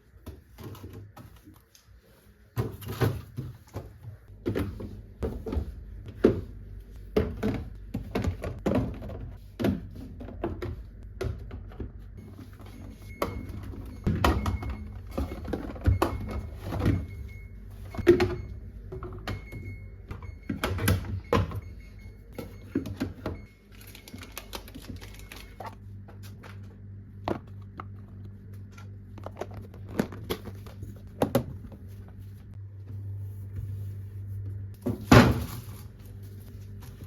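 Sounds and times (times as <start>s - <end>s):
steady low hum: 4.0s - 37.0s.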